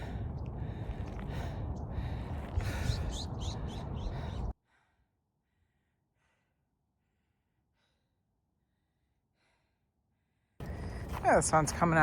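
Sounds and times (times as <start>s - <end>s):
wind buffeting microphone: 0.0s - 4.5s.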